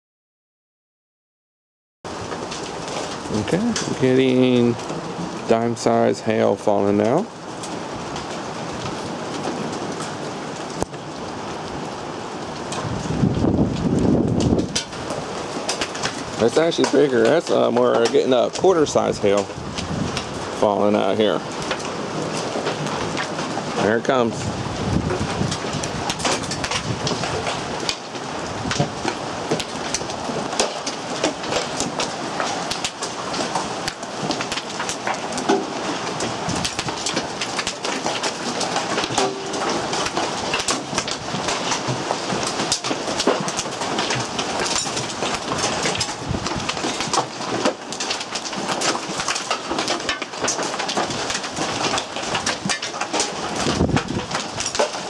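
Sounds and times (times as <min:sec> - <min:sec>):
hail clattering: 0:02.1 - 0:55.0
heavy rain hissing: 0:02.7 - 0:26.1.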